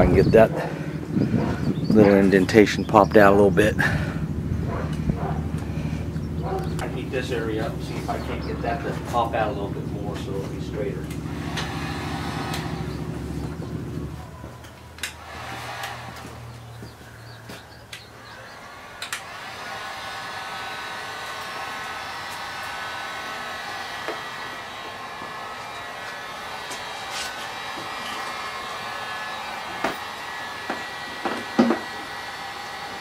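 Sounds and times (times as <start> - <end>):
heat gun blowing with fan whine: 0.0 - 33.0.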